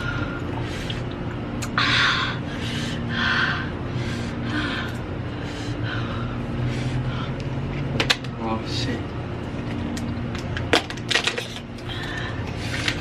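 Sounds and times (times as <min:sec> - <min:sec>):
low hum: 0:00.0 - 0:13.0
person breathing hard through mouth: 0:01.7 - 0:07.6, 0:11.8 - 0:13.0.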